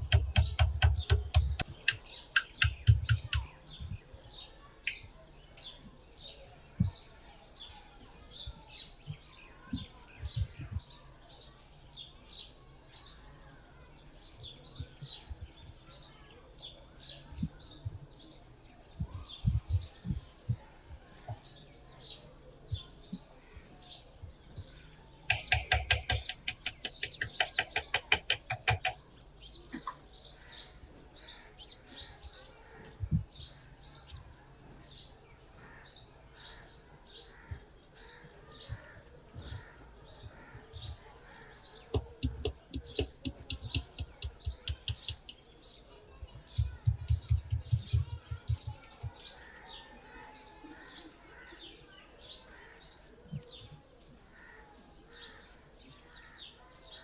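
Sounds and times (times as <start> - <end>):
small bird chirping: 0.0 - 4.2, 25.3 - 29.9, 41.8 - 49.8
hand tool scraping rusty metal: 25.3 - 29.0, 42.0 - 45.4.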